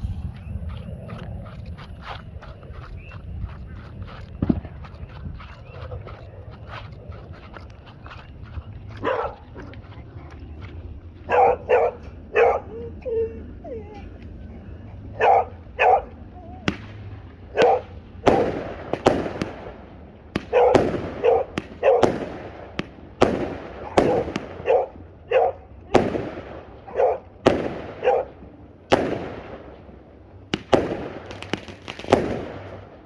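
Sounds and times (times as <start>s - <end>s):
fireworks banging: 4.4s - 4.8s, 16.1s - 25.1s, 25.7s - 33.0s
dog barking: 8.9s - 9.7s, 11.3s - 12.9s, 15.2s - 16.6s, 17.5s - 18.0s, 20.5s - 22.1s, 23.8s - 25.7s, 26.9s - 27.3s, 28.0s - 28.4s.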